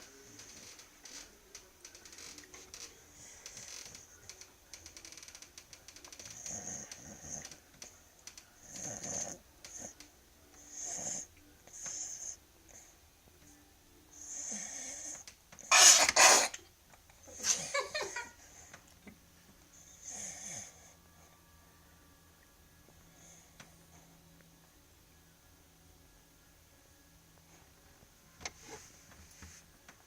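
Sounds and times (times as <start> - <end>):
dog snoring: 6.1 - 7.9, 8.6 - 12.8, 14.1 - 15.3, 19.7 - 21.3.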